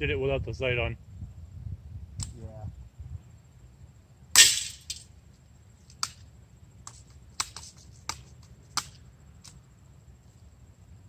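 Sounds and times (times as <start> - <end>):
bb gun firing: 4.4 - 5.0.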